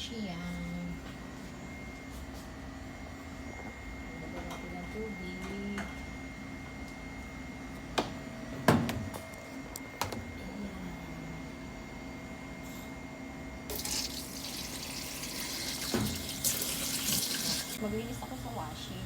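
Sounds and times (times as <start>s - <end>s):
water running from a tap: 13.7s - 17.8s.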